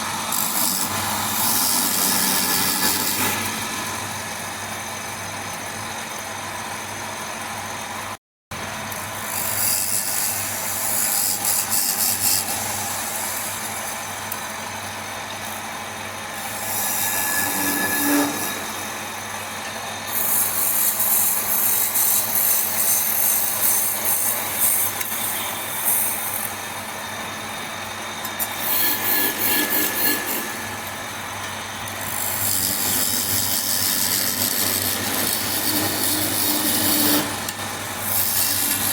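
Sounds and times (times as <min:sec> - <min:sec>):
tool scraping spinning wood: 0:00.0 - 0:04.9, 0:28.2 - 0:38.9
wood lathe humming: 0:00.0 - 0:05.5, 0:08.9 - 0:38.9.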